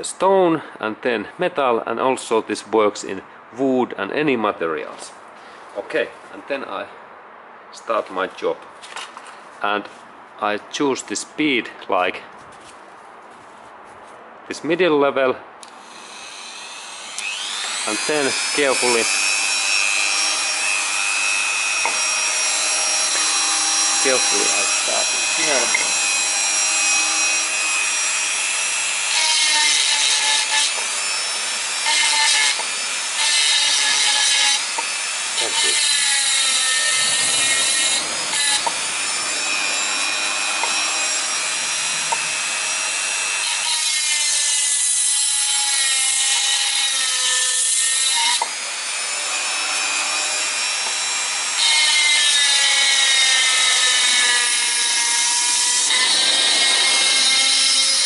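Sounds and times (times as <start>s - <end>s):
rotary tool motor whine: 15.8s - 44.2s, 48.4s - 58.0s
grinding stone rasp: 17.0s - 48.5s, 49.1s - 58.0s.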